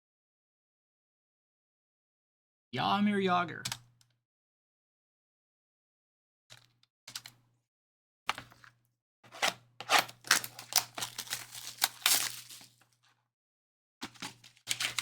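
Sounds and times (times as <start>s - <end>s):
card packaging taps and rustles: 8.3s - 8.7s, 9.3s - 12.8s, 14.0s - 15.0s
packaging crinkling and tearing: 9.3s - 12.8s, 14.1s - 15.0s.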